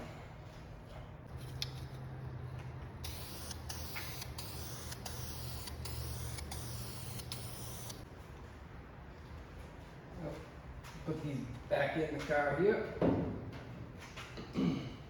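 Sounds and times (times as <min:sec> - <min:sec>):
steady low hum: 0:00.0 - 0:12.2
aerosol can spraying: 0:03.0 - 0:08.0.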